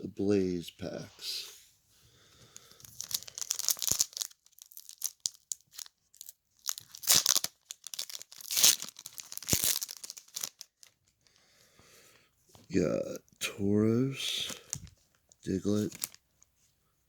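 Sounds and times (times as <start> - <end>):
foil wrapper crinkling: 2.6 - 11.0, 15.5 - 16.2
foil wrapper tearing: 2.8 - 11.0, 15.7 - 16.2.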